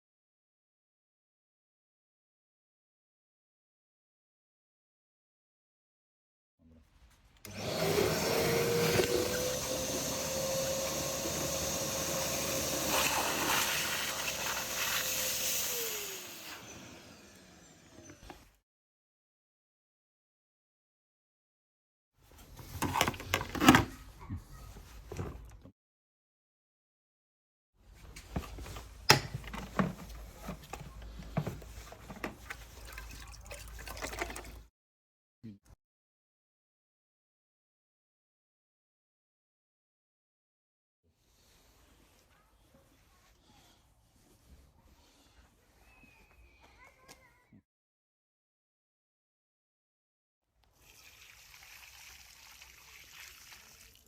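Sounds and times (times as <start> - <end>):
vacuum cleaner motor whining: 7.4 - 18.5
water splashing and dripping: 32.7 - 34.6.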